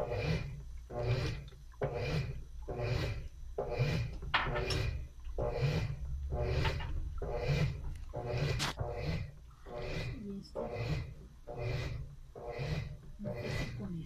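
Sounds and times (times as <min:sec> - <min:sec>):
low motor hum: 0:00.0 - 0:14.0
washing machine swishing: 0:04.8 - 0:14.0.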